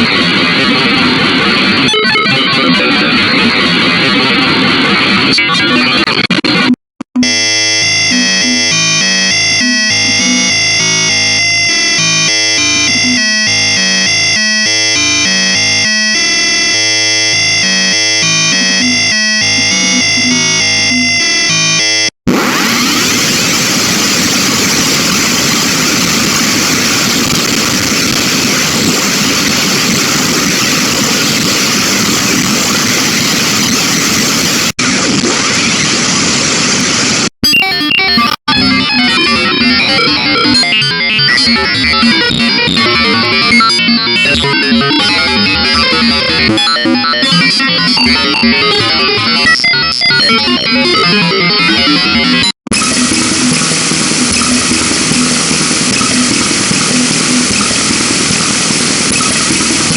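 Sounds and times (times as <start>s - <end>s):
harsh computer-generated noise: 0.0s - 59.9s.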